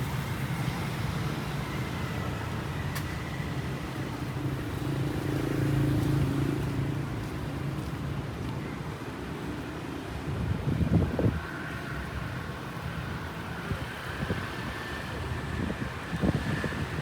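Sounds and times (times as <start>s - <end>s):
road noise: 0.0s - 17.0s.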